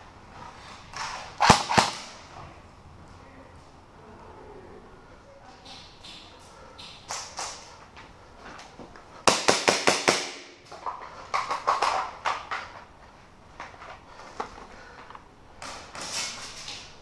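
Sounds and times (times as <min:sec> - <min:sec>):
airsoft guns firing: 0:01.4 - 0:02.2, 0:09.2 - 0:10.6.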